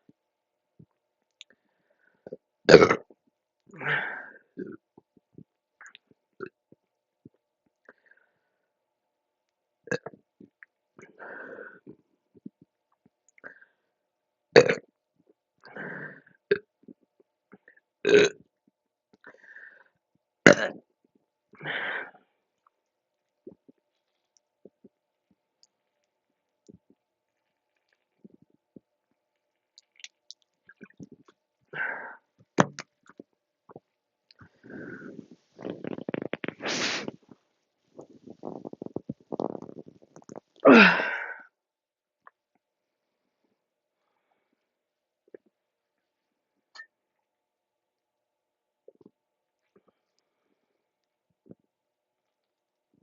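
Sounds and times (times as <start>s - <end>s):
woman burping: 2.7s - 3.1s, 14.6s - 14.8s, 18.1s - 18.4s, 20.5s - 20.8s, 40.6s - 41.4s.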